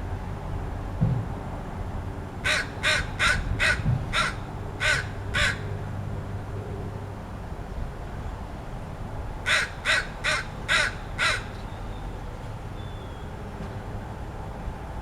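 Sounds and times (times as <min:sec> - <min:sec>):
low thump: 0:01.0 - 0:01.3
crow calling harshly: 0:02.4 - 0:05.7, 0:09.4 - 0:11.6.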